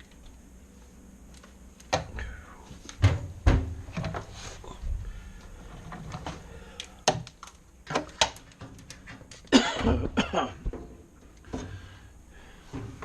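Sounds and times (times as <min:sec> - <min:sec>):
clicks and knocks of handling: 0:05.8 - 0:09.5
person coughing: 0:09.5 - 0:10.7.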